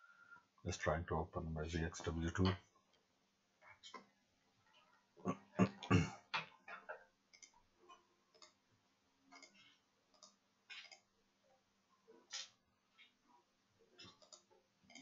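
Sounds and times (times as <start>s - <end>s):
faint steady hum: 0.0s - 6.2s
computer mouse clicking: 7.3s - 7.6s, 9.3s - 11.1s, 14.0s - 15.0s.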